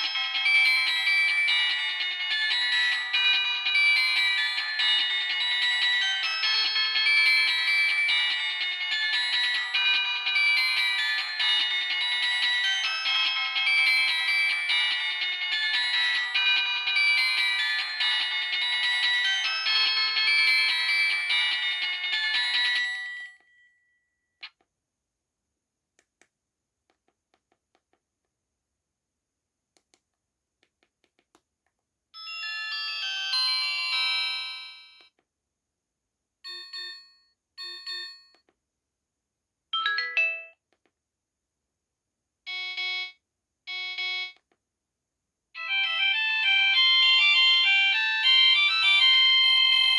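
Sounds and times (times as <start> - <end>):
polyphonic ringtone melody: 0.0 - 23.4, 39.8 - 40.6, 45.6 - 49.9.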